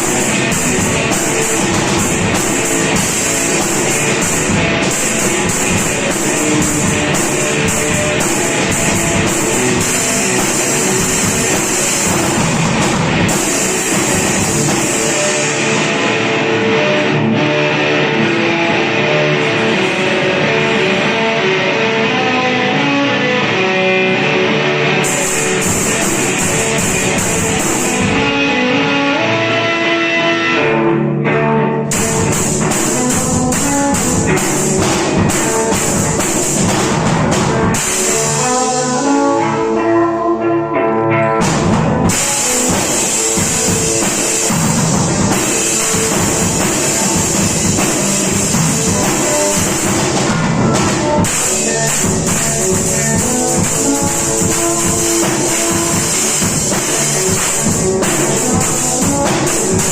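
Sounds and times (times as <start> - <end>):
drums and cymbals: 0.0 - 17.1, 25.0 - 28.6, 31.9 - 39.4, 41.4 - 59.9
rock guitar: 0.0 - 59.9.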